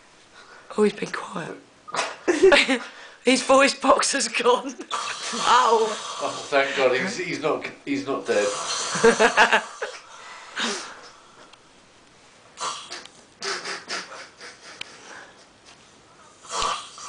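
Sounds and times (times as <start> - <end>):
man snoring: 5.0 - 6.7, 8.3 - 9.9.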